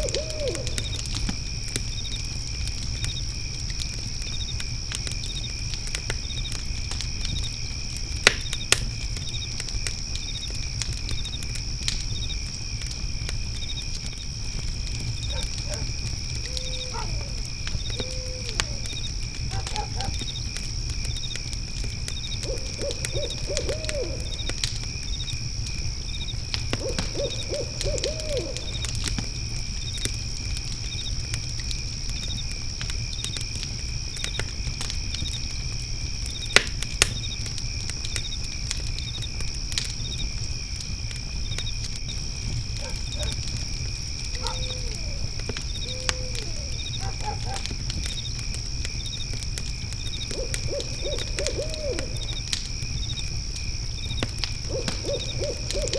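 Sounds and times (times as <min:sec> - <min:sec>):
owl hooting: 0:00.0 - 0:01.0, 0:15.3 - 0:18.9, 0:19.5 - 0:20.2, 0:22.4 - 0:24.4, 0:26.8 - 0:28.8, 0:44.4 - 0:47.6, 0:50.3 - 0:52.3, 0:54.7 - 0:55.9
crickets chirping: 0:00.0 - 0:55.9
fire crackling and popping: 0:00.0 - 0:55.9.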